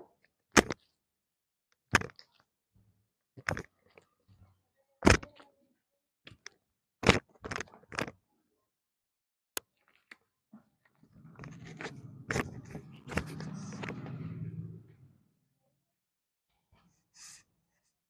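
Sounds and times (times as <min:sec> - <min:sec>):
rustling and scraping: 0:10.9 - 0:15.3
low hum: 0:11.0 - 0:15.4.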